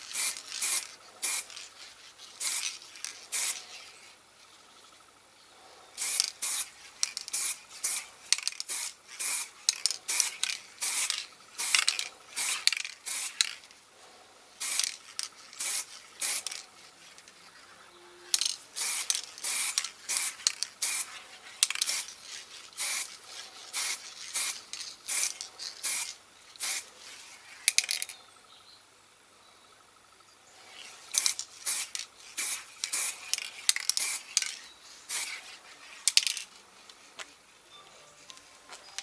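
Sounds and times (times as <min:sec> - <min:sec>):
spray-paint can rattling: 0:00.0 - 0:04.1, 0:06.0 - 0:13.7, 0:14.6 - 0:17.4, 0:18.3 - 0:26.9, 0:27.6 - 0:28.2, 0:30.8 - 0:37.0.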